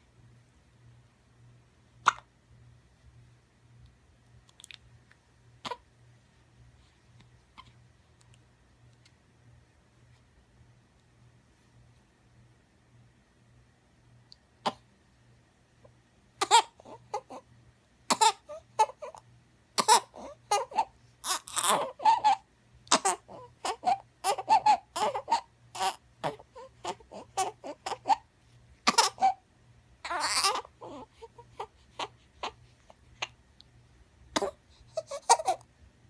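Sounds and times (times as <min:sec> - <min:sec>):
baby fussing and crying: 0:16.4 - 0:17.5, 0:18.1 - 0:19.2, 0:19.8 - 0:29.4, 0:30.0 - 0:33.4, 0:34.3 - 0:35.7.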